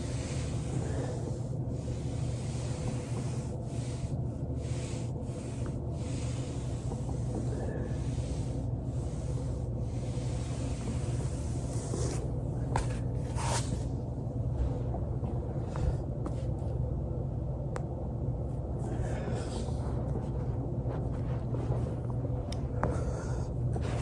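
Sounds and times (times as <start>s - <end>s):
body rubbing on foam roller: 0.0s - 14.0s, 18.8s - 24.0s
steady low hum: 0.0s - 24.0s.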